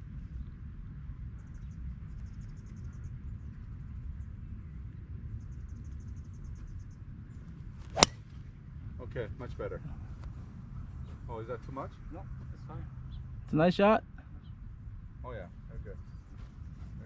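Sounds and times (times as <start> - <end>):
wind rumble on microphone: 14.2 - 17.0.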